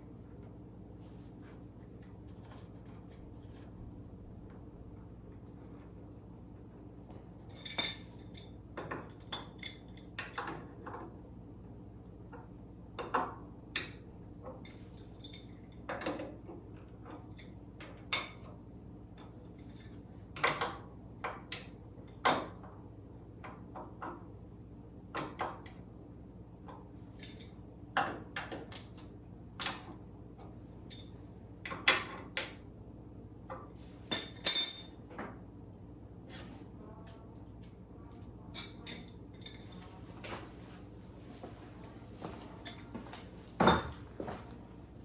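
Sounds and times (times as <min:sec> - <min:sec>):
steady low hum: 0:00.0 - 0:10.1, 0:32.6 - 0:45.0
metal tools clinking and knocking: 0:07.5 - 0:10.5, 0:14.6 - 0:15.8, 0:19.6 - 0:20.0, 0:27.2 - 0:27.6, 0:30.9 - 0:31.2, 0:34.1 - 0:35.0, 0:38.1 - 0:40.4, 0:41.0 - 0:44.0
ringing metal clank: 0:34.1 - 0:34.9.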